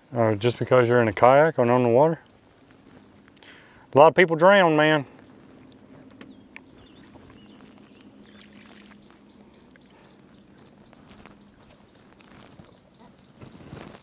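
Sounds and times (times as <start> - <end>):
water sloshing and trickling: 5.1 - 13.6.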